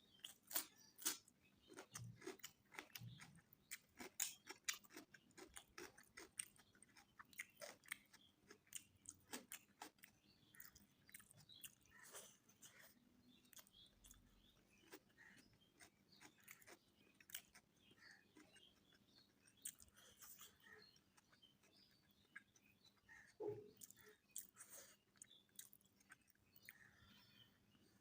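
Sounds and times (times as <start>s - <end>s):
person chewing food: 0.1s - 27.1s.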